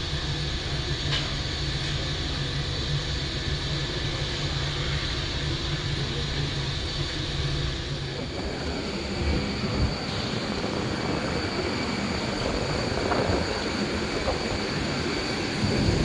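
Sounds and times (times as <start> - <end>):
jet airliner rumbling: 4.1 - 16.0.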